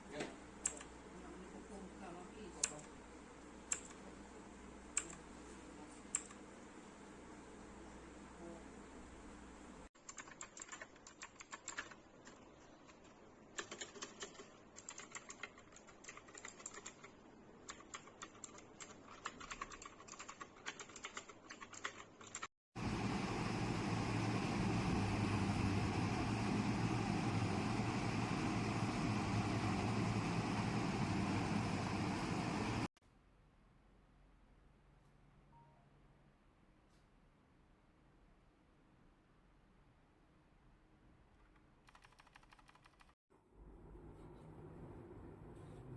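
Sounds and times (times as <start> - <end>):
mechanical keyboard typing: 3.7 - 4.0, 10.0 - 22.5, 41.4 - 43.2.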